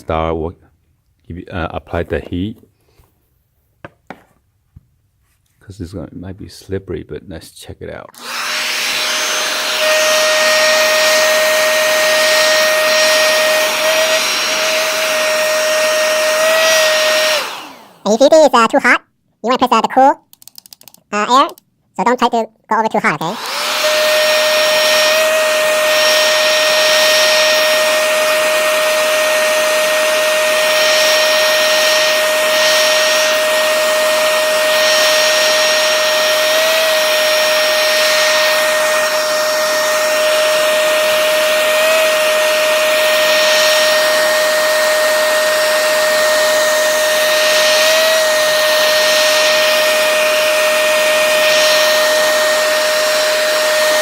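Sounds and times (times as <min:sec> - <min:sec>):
hair dryer running: 0:08.2 - 0:18.3, 0:23.3 - 0:54.0.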